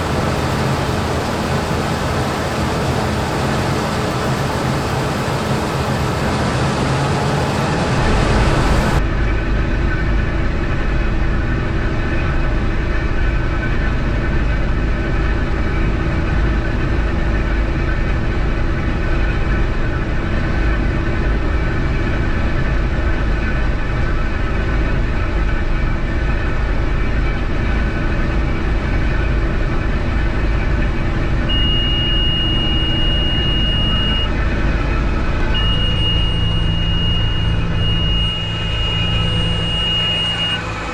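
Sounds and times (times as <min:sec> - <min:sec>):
combine harvester running: 0:00.0 - 0:40.9
thin high tone: 0:31.5 - 0:40.9.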